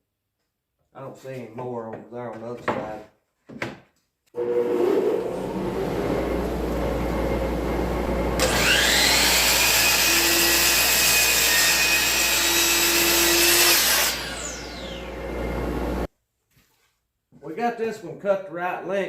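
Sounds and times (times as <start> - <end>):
electric saw motor whine: 4.4 - 16.1.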